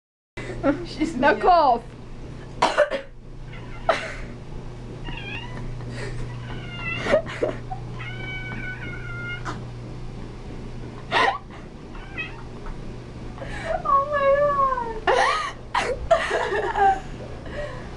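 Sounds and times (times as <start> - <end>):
person coughing: 2.6 - 3.1
cat meowing and yowling: 5.1 - 5.6, 6.3 - 7.1, 8.0 - 9.5, 12.0 - 12.4.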